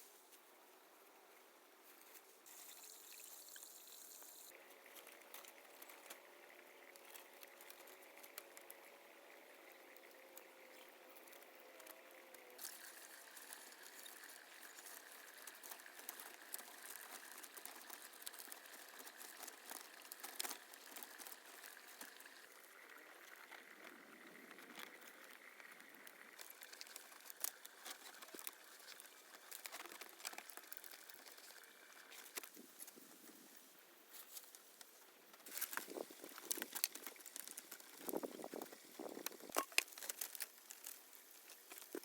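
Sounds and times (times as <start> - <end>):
rustling: 26.3 - 42.0.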